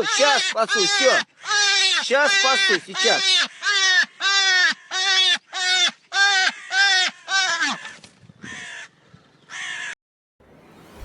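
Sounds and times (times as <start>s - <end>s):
animal crying out: 0.0s - 7.9s.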